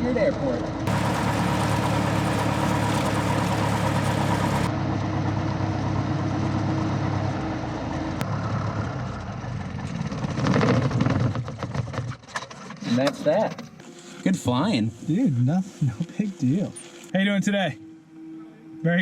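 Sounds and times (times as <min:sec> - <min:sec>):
aircraft piston engine running: 0:00.9 - 0:04.7.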